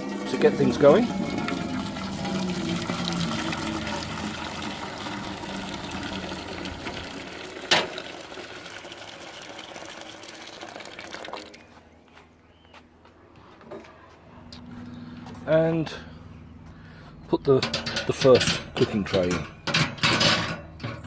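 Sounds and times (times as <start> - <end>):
hot water pouring into tray: 0.0 - 11.6.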